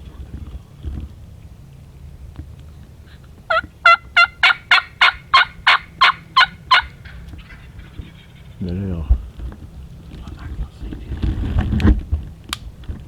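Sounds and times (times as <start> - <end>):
turkey yelping: 3.0 - 10.0.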